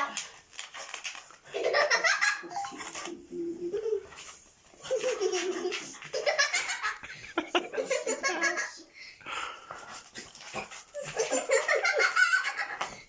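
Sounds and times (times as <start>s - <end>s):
people laughing: 4.9s - 8.9s, 11.0s - 13.0s.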